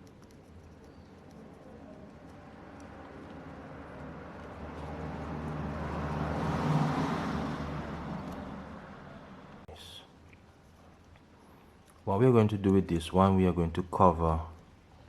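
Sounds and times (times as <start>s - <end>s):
vehicle passing by: 1.4s - 9.7s.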